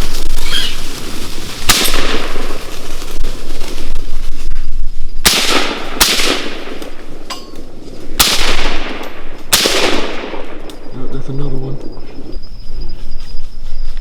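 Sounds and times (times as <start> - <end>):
rifle shots echoing: 1.6 - 2.8, 5.2 - 11.0.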